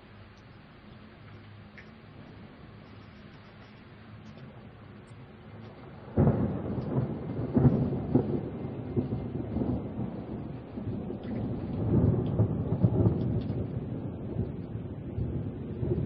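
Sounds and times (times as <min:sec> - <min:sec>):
rain: 0:00.0 - 0:16.0
thunder rumbling and cracking: 0:04.4 - 0:16.0.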